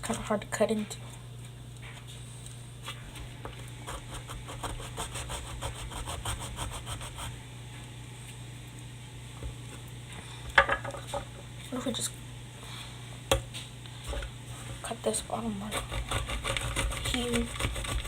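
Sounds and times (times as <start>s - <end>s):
blade sawing cardboard tube: 3.9s - 7.3s, 15.7s - 18.0s.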